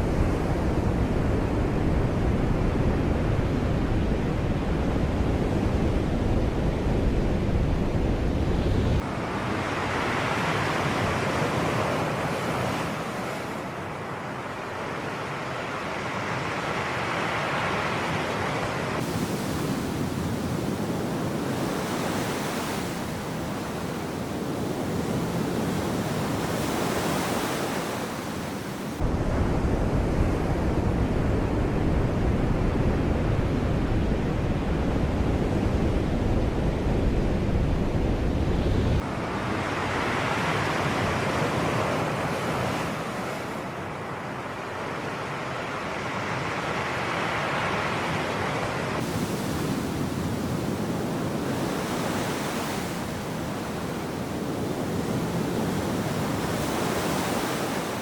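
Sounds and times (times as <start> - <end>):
wind rumble on microphone: 0.0 - 13.7, 17.9 - 44.1, 47.8 - 58.0
sea surf washing ashore: 8.9 - 29.1, 38.2 - 58.0.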